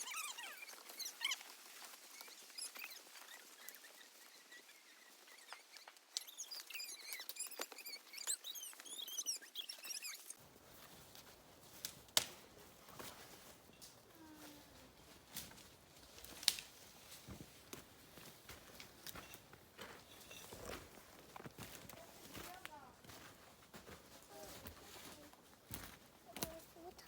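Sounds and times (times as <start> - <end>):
small birds chirping: 0.0 - 10.4.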